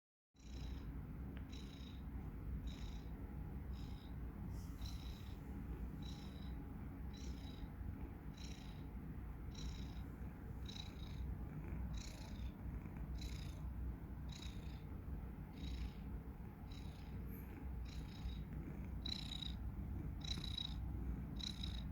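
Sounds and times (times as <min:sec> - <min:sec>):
low continuous rumble: 0:00.4 - 0:21.9
cat snoring whistle: 0:02.6 - 0:03.1, 0:06.0 - 0:06.6, 0:08.3 - 0:08.8, 0:11.9 - 0:12.5, 0:15.5 - 0:16.0, 0:17.8 - 0:20.8, 0:21.4 - 0:21.9.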